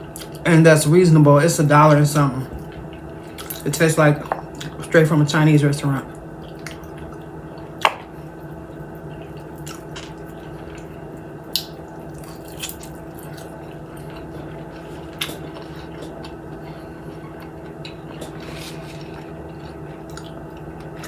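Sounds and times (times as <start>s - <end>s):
steady low hum: 0.0s - 21.0s
wet chewing: 2.6s - 4.8s, 6.1s - 21.0s.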